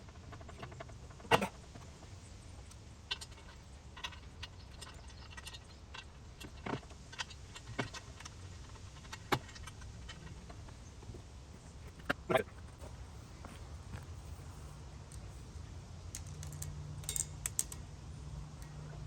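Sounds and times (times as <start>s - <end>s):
steady low hum: 0.0s - 19.0s
metallic clinks and knocks: 16.1s - 17.8s.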